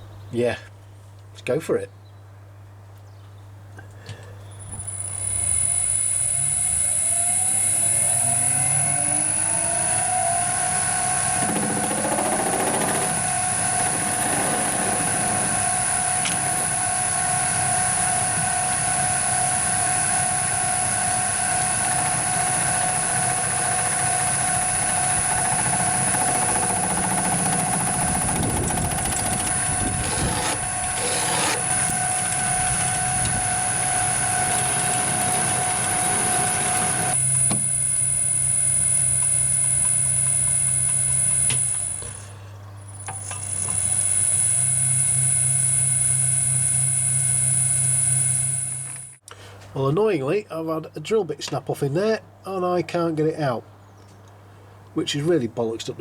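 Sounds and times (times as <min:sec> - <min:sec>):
machine tool motor whine: 0:04.5 - 0:49.2
rough cutting noise: 0:04.7 - 0:17.0, 0:25.4 - 0:42.3.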